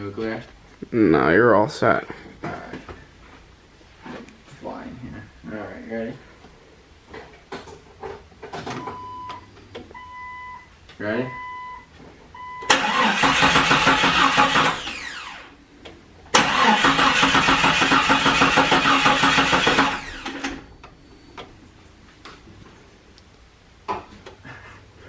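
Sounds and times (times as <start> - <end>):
engine cranking without starting: 12.7 - 15.5, 16.3 - 20.7.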